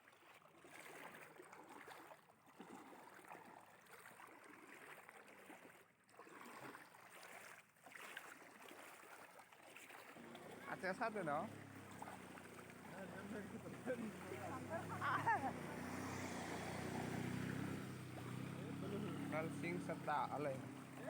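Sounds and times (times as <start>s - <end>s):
floodwater rushing: 7.9s - 21.0s.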